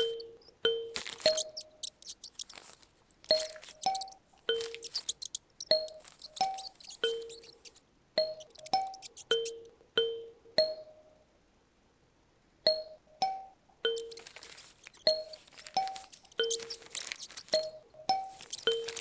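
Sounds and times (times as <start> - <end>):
high rustling noise: 0.0 - 7.8, 8.4 - 9.5, 14.0 - 19.0.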